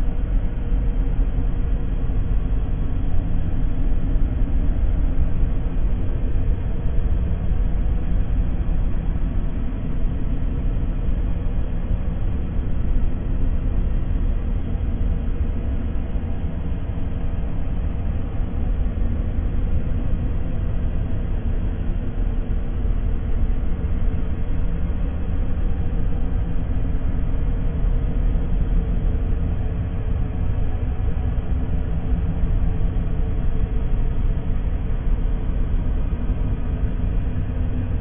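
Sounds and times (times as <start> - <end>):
deep rumbling drone: 0.0 - 38.0
faint humming tones: 0.0 - 38.0.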